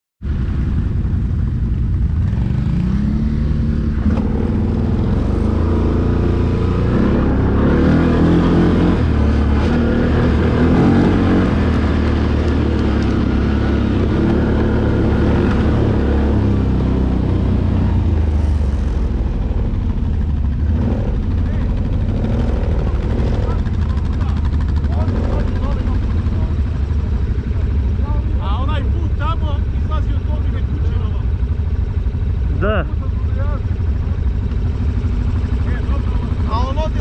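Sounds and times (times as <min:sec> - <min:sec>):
atv engine running: 0:00.3 - 0:37.0.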